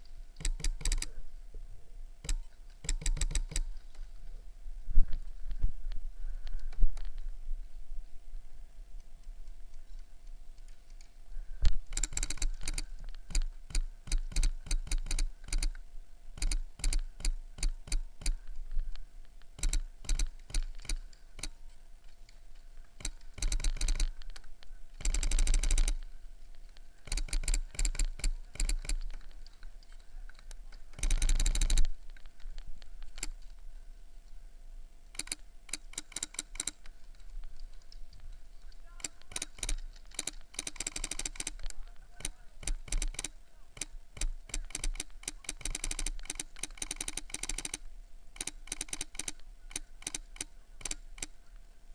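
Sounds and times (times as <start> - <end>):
full-auto airsoft bursts: 0.4 - 1.1, 2.2 - 3.7, 11.9 - 15.8, 25.0 - 26.0, 31.0 - 31.8, 39.0 - 47.8.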